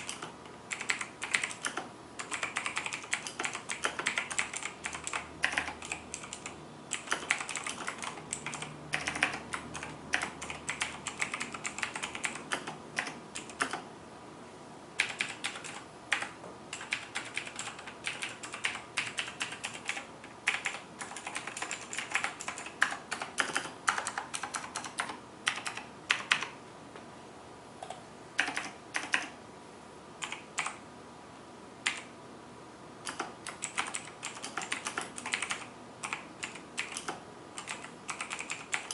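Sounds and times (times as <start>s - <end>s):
mechanical keyboard typing clicks: 0.0s - 13.9s, 15.0s - 26.5s, 27.8s - 29.3s, 30.2s - 30.8s, 31.8s - 32.1s, 33.0s - 38.9s.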